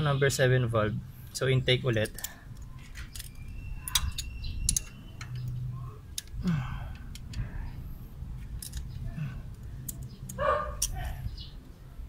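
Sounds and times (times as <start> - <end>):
metal hand tools clicking: 1.9 - 7.4.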